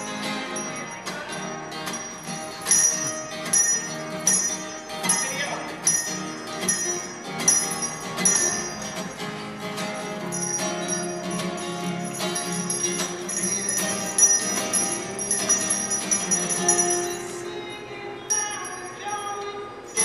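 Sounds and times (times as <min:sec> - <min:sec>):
hand bells ringing rapidly: 0:00.0 - 0:20.0
music: 0:00.0 - 0:20.0.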